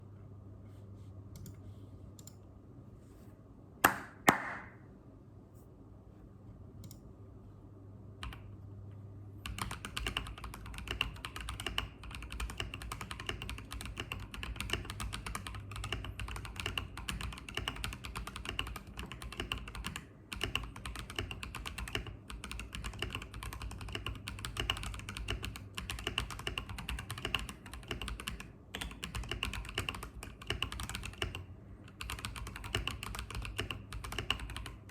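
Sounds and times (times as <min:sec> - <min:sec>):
mechanical keyboard typing: 0:08.2 - 0:08.4, 0:09.4 - 0:34.9.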